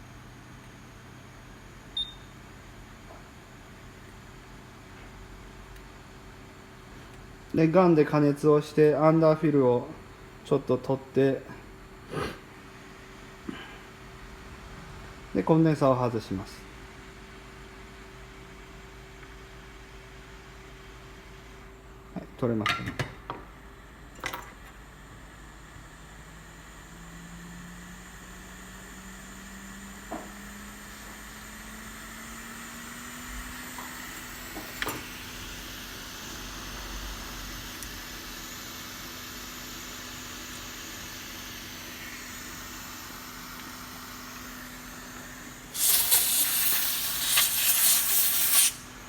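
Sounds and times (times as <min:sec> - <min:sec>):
hot air gun blower humming: 0:33.8 - 0:49.0
rushing air jet hiss: 0:45.7 - 0:49.0.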